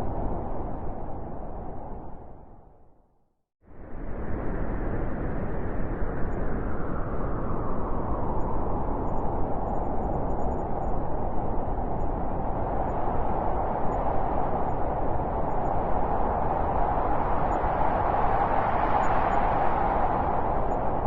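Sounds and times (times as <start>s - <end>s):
blizzard wind rushing: 0.0s - 2.8s, 3.7s - 21.0s.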